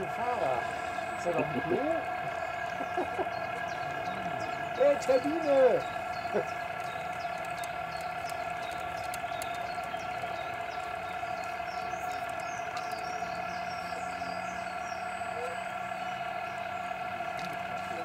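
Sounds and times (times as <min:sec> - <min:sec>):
machine whining: 0:00.0 - 0:18.0
faint high ticks: 0:03.0 - 0:13.7, 0:17.2 - 0:18.0.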